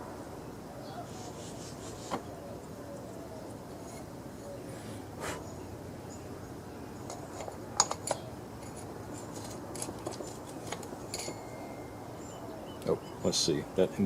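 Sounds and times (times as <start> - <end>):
low background hiss: 0.0 - 14.0
metal parts clicking and clinking: 7.1 - 11.6.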